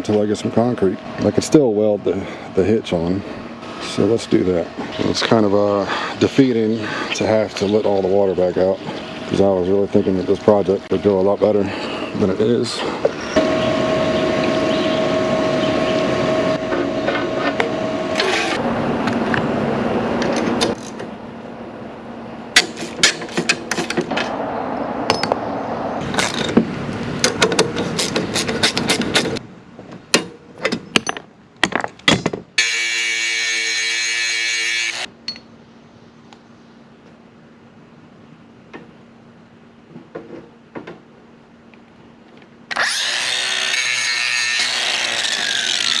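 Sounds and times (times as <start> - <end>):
steady whir: 8.7 - 22.6
power tool running: 12.0 - 20.8, 32.6 - 35.1, 42.7 - 46.0.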